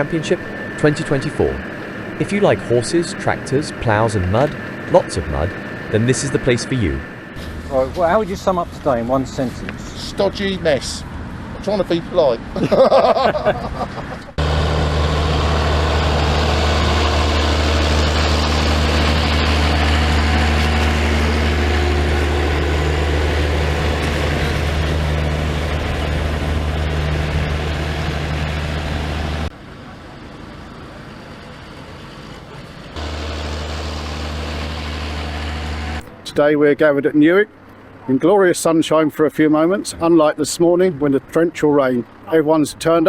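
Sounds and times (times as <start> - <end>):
mixed background noise: 0.0 - 12.6
heavy engine humming: 0.0 - 36.4.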